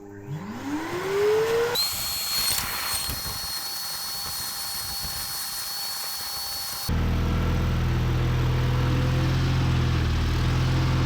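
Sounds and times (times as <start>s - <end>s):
vacuum cleaner motor whining: 0.0s - 7.1s.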